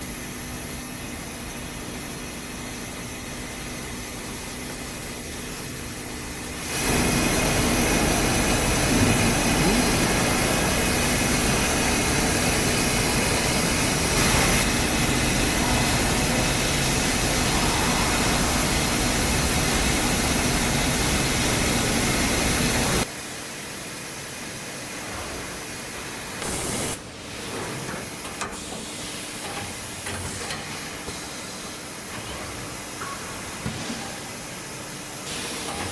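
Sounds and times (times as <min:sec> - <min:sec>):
machine hum: 0:05.6 - 0:23.0.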